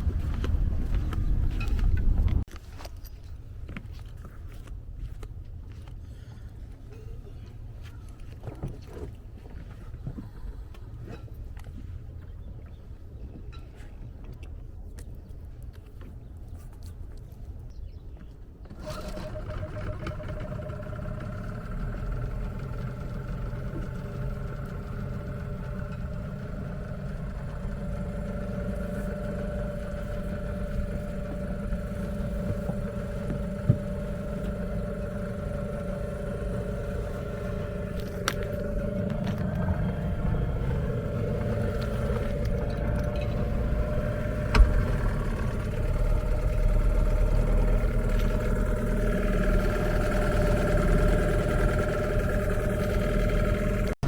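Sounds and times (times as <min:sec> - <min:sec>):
small outboard motor running: 0:18.6 - 0:54.0.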